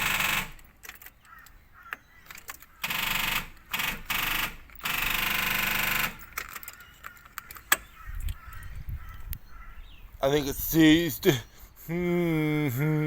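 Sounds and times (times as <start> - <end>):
car starter clattering: 0.0 - 8.0.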